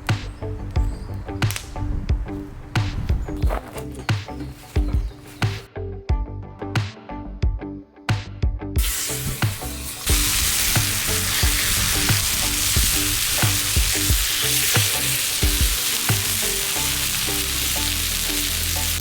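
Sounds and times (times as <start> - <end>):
background music with beat: 0.0 - 19.0
food sizzling in a pan: 8.8 - 19.0.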